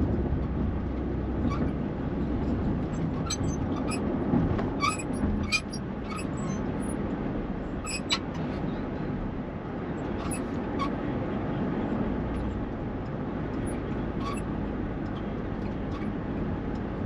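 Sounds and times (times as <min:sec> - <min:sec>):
low road rumble inside van: 0:00.0 - 0:17.0
wheelchair squeaks: 0:03.0 - 0:04.1, 0:04.8 - 0:06.6, 0:07.9 - 0:08.2, 0:10.2 - 0:10.9.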